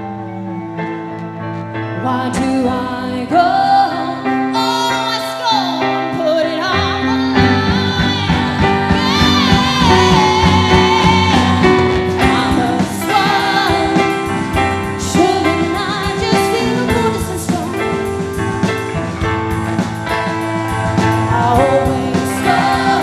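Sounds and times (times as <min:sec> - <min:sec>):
person singing wordless vocals: 0:02.0 - 0:18.2, 0:21.3 - 0:23.0
steady drum beat: 0:07.4 - 0:23.0.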